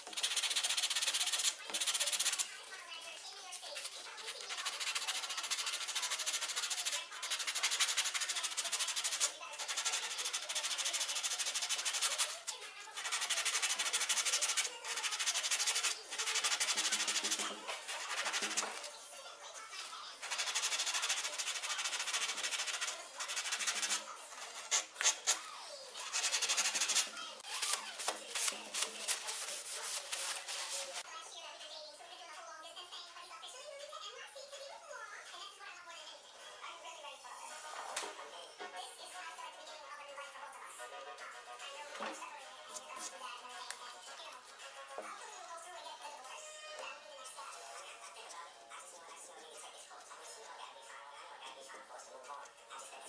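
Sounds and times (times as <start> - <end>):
sandpaper rasping on wood: 0.0 - 2.4, 4.3 - 18.8, 20.2 - 25.4, 26.0 - 31.0.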